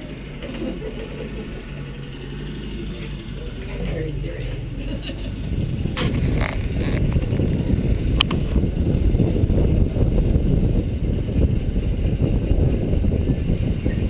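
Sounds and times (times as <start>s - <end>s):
train wheels rumbling on rails: 5.2s - 14.0s.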